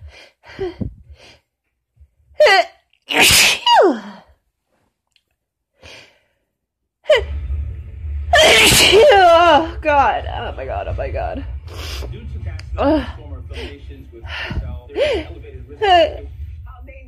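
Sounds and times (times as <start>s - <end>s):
woman sneezing: 2.4s - 4.2s
gasping inhale: 5.8s - 6.5s.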